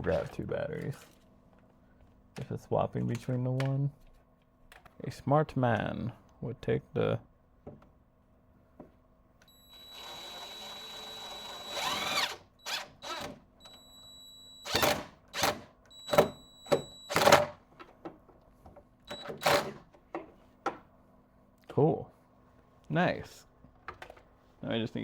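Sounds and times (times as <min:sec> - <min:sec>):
cordless drill driving screw: 0:09.7 - 0:13.4, 0:14.6 - 0:15.7.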